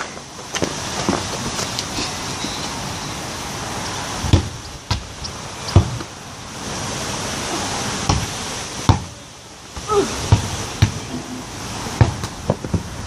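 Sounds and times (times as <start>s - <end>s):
football thuds: 5.7s - 6.1s, 10.3s - 11.0s, 12.0s - 12.9s.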